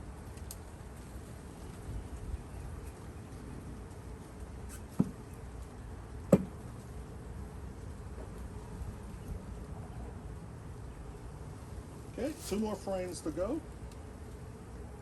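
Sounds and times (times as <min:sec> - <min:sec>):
hive frames knocking on wood: 0:04.9 - 0:05.2, 0:06.3 - 0:06.6.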